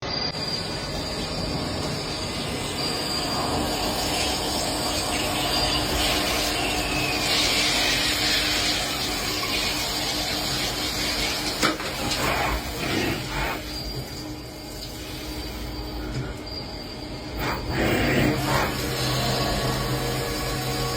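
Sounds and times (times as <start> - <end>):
machine tool running: 0.0 - 11.6, 16.5 - 20.9
falling machine whine: 0.0 - 20.9.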